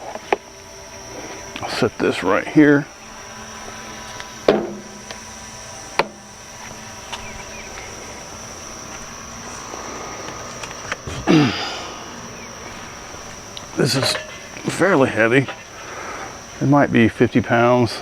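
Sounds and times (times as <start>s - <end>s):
insects buzzing: 0.0s - 18.0s
sharp knocks: 4.5s - 5.1s.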